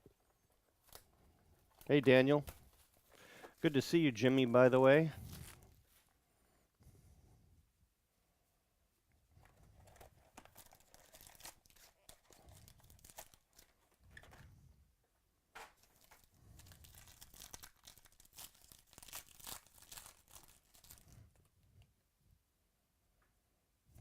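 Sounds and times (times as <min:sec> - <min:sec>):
packaging tearing and crinkling: 0:09.8 - 0:14.3, 0:15.8 - 0:21.2.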